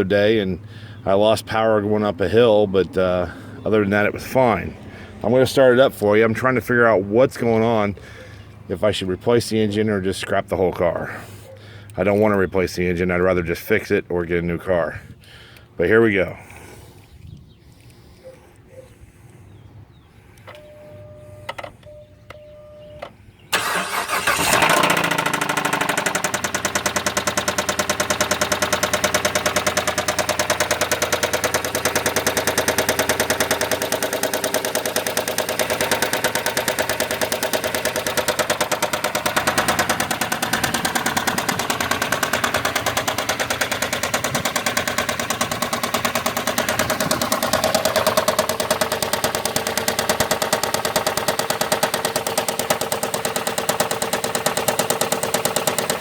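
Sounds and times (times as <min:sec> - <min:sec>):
short electronic beeps: 0:20.6 - 0:23.0
car engine cranking and starting: 0:20.6 - 0:56.0
engine idling with rapid knock: 0:23.6 - 0:56.0.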